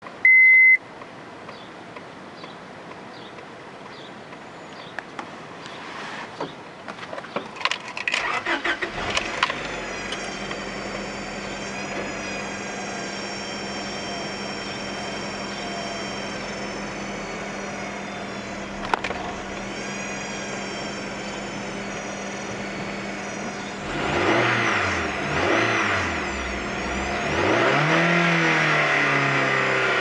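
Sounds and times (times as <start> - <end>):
car engine cranking and idling: 6.9 - 30.0
high-pitched engine whine: 8.2 - 30.0.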